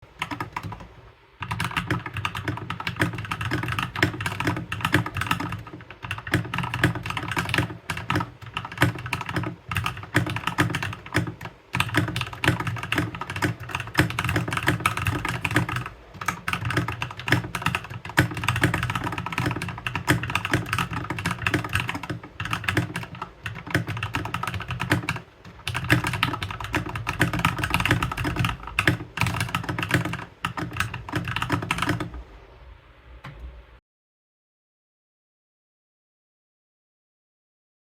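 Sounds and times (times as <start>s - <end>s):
mechanical keyboard typing: 0.1s - 32.2s.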